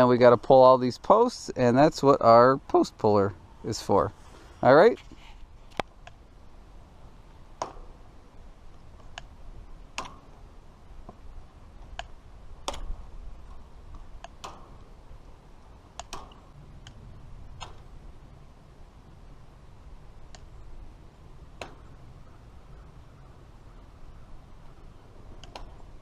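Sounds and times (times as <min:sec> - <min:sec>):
sharp clicks: 0:14.2 - 0:14.8, 0:15.9 - 0:17.0, 0:25.4 - 0:25.8.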